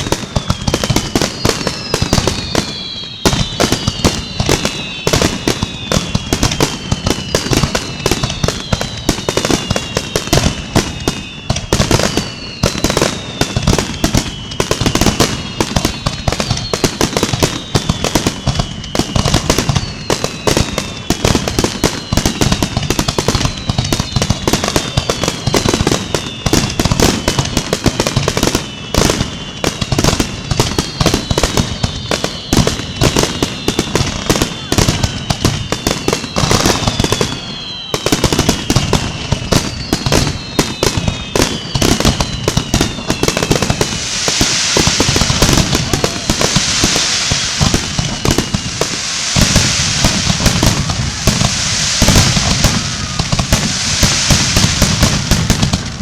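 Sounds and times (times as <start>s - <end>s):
whistles falling in pitch: 0.0s - 55.1s
fireworks bangs and crackles: 0.0s - 56.0s.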